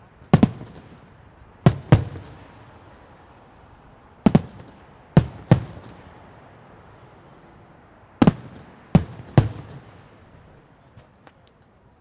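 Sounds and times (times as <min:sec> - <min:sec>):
fireworks bursting: 0:00.3 - 0:03.0, 0:04.2 - 0:06.2, 0:08.2 - 0:10.2.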